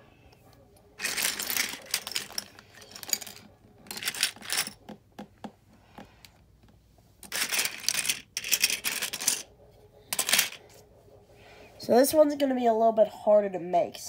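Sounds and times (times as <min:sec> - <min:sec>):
lego pieces clattering: 0:01.0 - 0:04.8, 0:07.2 - 0:09.5, 0:10.1 - 0:10.6.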